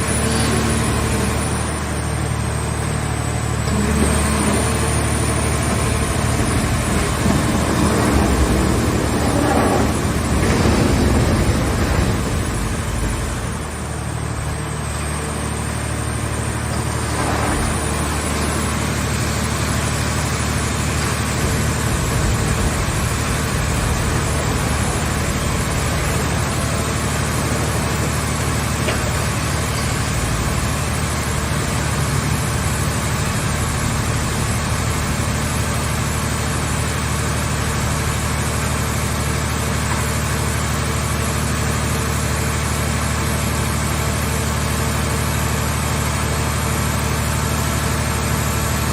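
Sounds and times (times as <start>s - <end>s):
baler engine humming: 0.0s - 15.4s, 16.3s - 35.0s.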